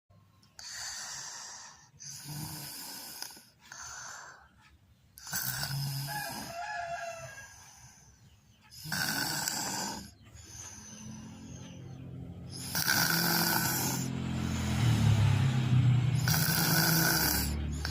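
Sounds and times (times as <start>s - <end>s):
person snoring: 0.6s - 4.3s, 5.2s - 6.6s, 8.7s - 11.4s, 12.5s - 15.0s, 16.2s - 17.9s
whistle-like tone in snore: 5.2s - 8.0s, 12.5s - 14.1s, 16.2s - 17.9s.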